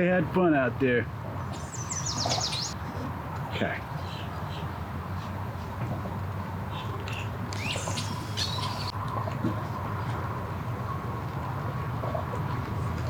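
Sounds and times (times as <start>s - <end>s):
birds squawking and chirping: 1.4s - 2.8s, 6.7s - 9.0s.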